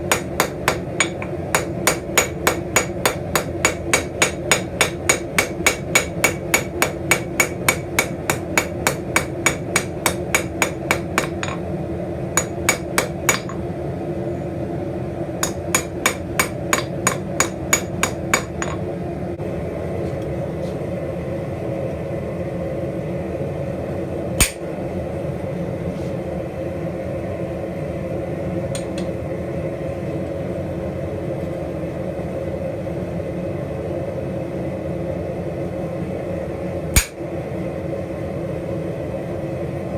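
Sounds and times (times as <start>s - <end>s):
hammer striking an anvil: 0.0s - 11.6s, 12.4s - 13.6s, 15.4s - 18.8s, 24.4s - 24.6s, 28.8s - 29.1s, 37.0s - 37.2s
steady hum: 0.0s - 33.4s.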